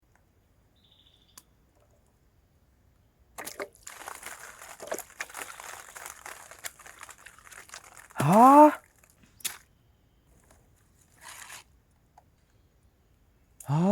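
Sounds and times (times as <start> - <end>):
material crinkling and crackling: 3.4 - 9.6, 10.3 - 11.7.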